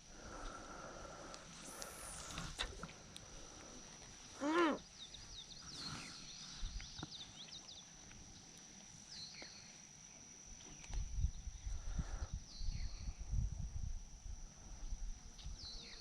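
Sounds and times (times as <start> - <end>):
steady high-pitched hum: 0.0 - 16.0
small birds chirping: 4.4 - 9.8.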